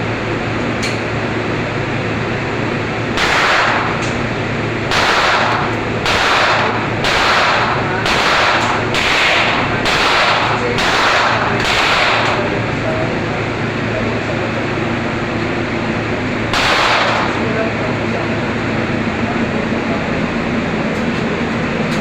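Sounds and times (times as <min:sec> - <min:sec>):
steady background hum: 0:00.0 - 0:22.0
gunshots: 0:03.2 - 0:04.0, 0:04.9 - 0:12.5, 0:16.5 - 0:17.4.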